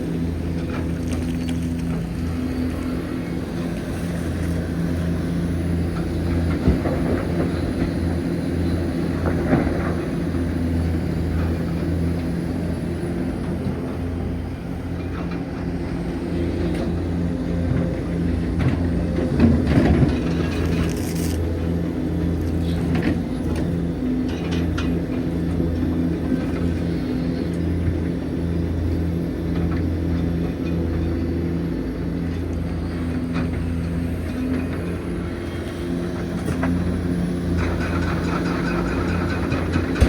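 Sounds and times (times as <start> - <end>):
excavator diesel engine running: 0.0 - 40.0
knocks and clatters: 37.5 - 40.0.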